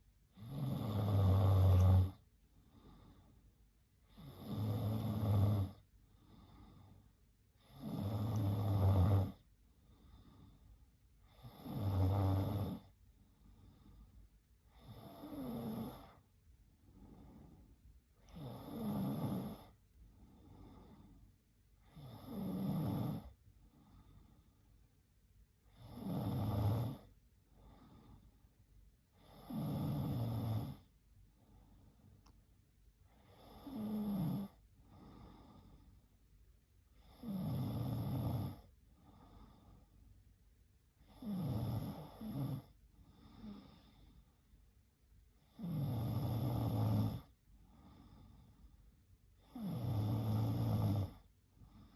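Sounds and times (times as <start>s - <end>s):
soft breath sounds: 0.0s - 22.6s, 23.2s - 26.1s, 26.9s - 51.9s
woman snoring: 0.3s - 2.2s, 4.1s - 5.8s, 7.6s - 9.4s, 11.3s - 12.9s, 14.7s - 16.2s, 18.2s - 19.8s, 21.8s - 23.4s, 25.7s - 27.1s, 29.2s - 30.9s, 33.1s - 35.7s, 37.0s - 38.7s, 41.0s - 44.1s, 45.4s - 48.2s, 49.4s - 51.9s.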